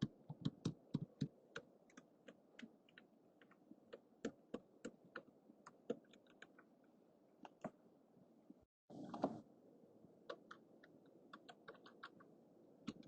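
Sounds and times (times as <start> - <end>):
keyboard typing clicks: 10.3 - 13.0.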